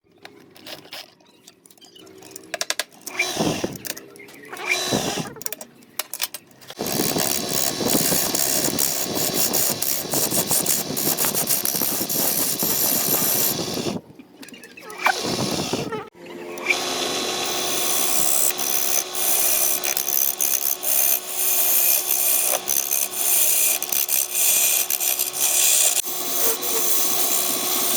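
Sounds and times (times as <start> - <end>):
lathe cutting wood: 4.6 - 5.3, 6.7 - 14.0, 14.9 - 27.9.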